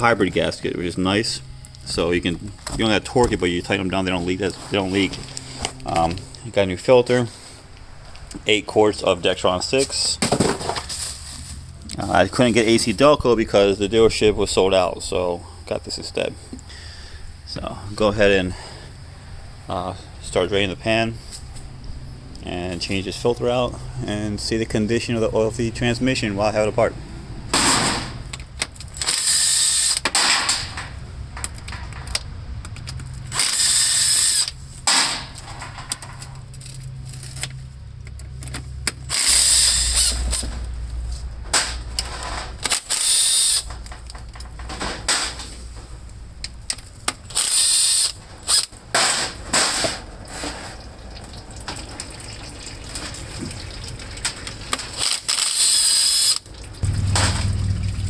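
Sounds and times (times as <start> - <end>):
power tool bursts: 29.0 - 30.7, 33.3 - 35.3, 39.1 - 40.4, 42.7 - 43.7, 47.3 - 48.7, 55.0 - 57.6.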